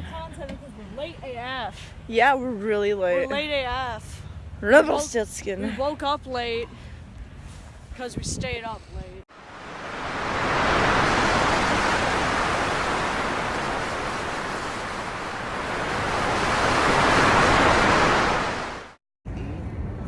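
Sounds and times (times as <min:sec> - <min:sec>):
steady rushing noise: 0:09.3 - 0:19.0.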